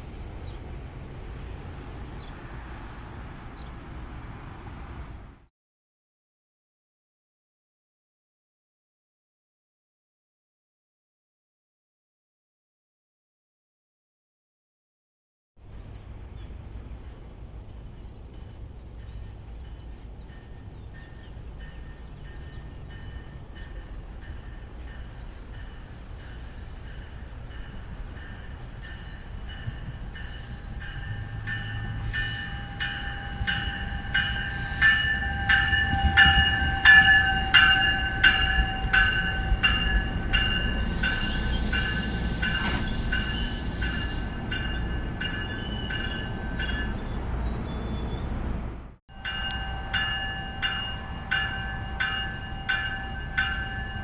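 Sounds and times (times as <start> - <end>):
train rumbling: 0.0 - 5.5, 15.6 - 54.0
train warning bell ringing: 17.3 - 47.9, 49.1 - 54.0.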